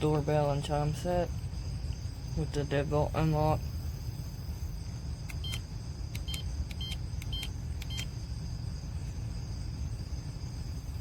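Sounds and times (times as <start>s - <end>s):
keypad button clicks with beeps: 5.3s - 5.6s, 6.2s - 8.1s.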